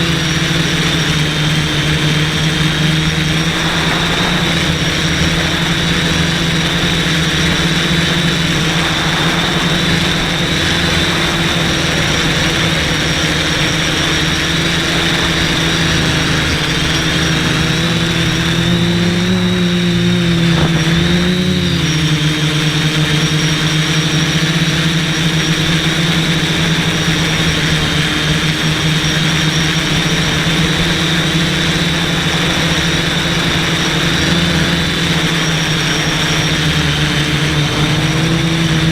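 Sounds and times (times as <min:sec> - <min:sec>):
quadcopter motors droning: 0:00.0 - 0:38.9.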